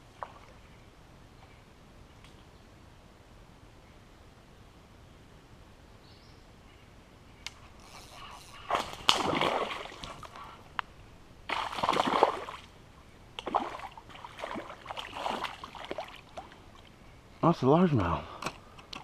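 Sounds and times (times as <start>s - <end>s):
water splashing: 8.1s - 10.6s, 11.4s - 12.8s, 13.4s - 17.0s.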